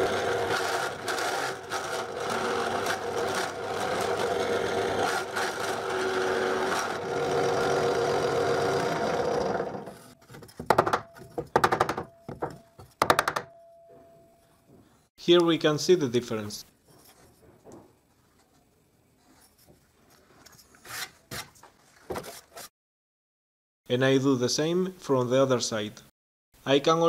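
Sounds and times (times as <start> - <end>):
drill press cutting wood: 0.0 - 10.2
short rasping bursts: 0.0 - 10.2.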